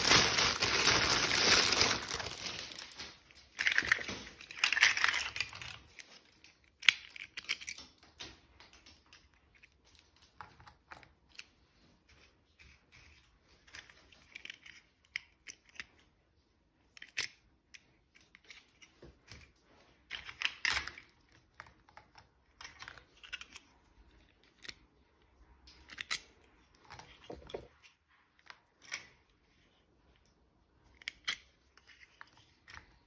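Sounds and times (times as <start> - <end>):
packaging rustling: 0.0 - 6.4
packaging being opened by hand: 0.0 - 8.2.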